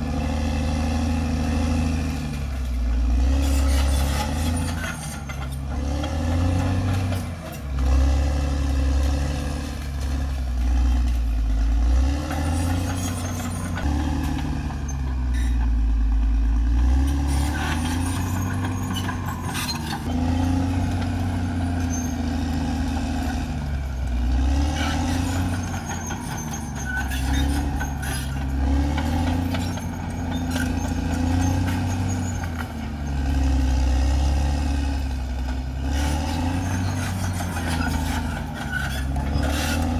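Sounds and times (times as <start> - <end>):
bulldozer diesel engine working: 0.0 - 39.9.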